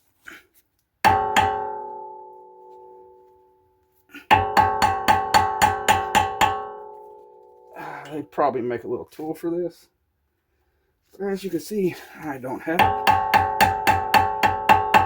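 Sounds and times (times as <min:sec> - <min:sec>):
hammer striking metal with ringing: 0:01.0 - 0:03.3, 0:04.3 - 0:08.2, 0:12.8 - 0:15.0.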